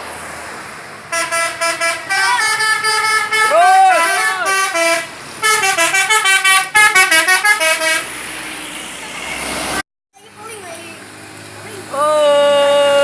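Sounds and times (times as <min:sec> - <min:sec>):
passing vehicle noise: 0:00.0 - 0:13.0
multi-tone musical bus horn: 0:01.1 - 0:09.6.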